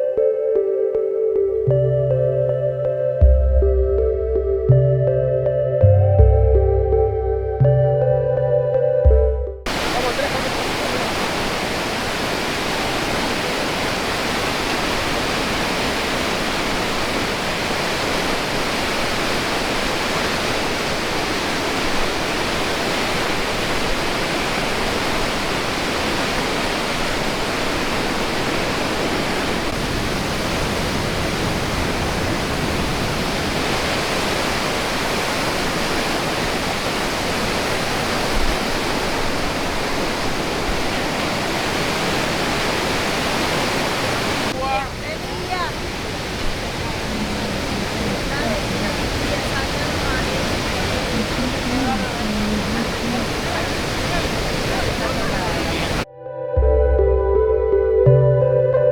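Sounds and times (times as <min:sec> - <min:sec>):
waterfall rushing: 0:09.7 - 0:56.1.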